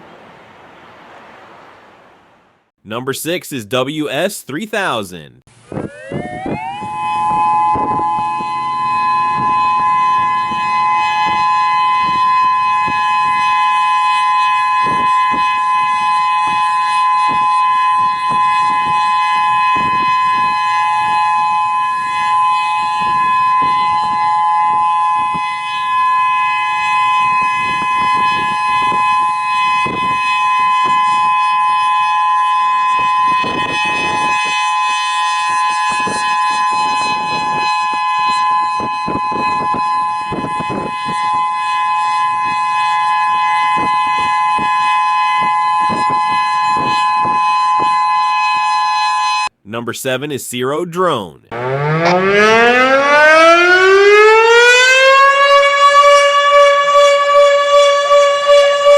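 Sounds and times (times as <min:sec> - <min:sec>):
background noise: 0:00.0 - 0:05.4, 0:49.5 - 0:52.1
warning siren two-tone chord: 0:05.7 - 0:49.5, 0:51.5 - 0:58.9.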